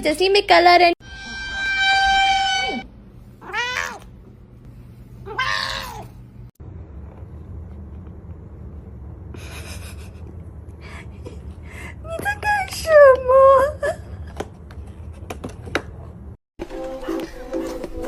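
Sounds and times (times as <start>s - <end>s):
cat meowing: 3.4s - 4.1s, 5.2s - 6.2s.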